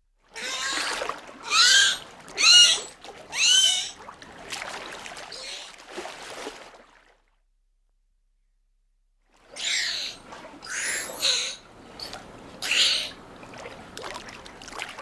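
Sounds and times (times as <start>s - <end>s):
dolphin squeals: 0.4s - 4.0s, 5.3s - 5.7s, 9.5s - 13.2s
wave washing: 0.4s - 6.6s, 10.2s - 15.0s.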